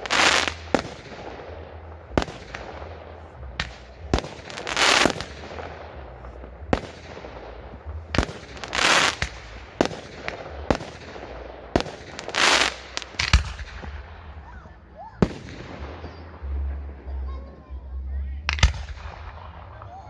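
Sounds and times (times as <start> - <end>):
hissing crackling firework bursts: 0.0 - 1.5, 8.2 - 10.1, 11.8 - 13.6
firework bangs: 0.0 - 14.4, 15.2 - 17.0.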